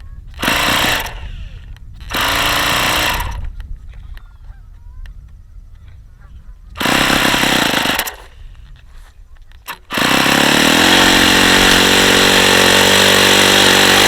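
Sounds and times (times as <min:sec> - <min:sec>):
model airplane engine running: 0:00.3 - 0:03.5, 0:06.8 - 0:08.6, 0:09.7 - 0:14.0.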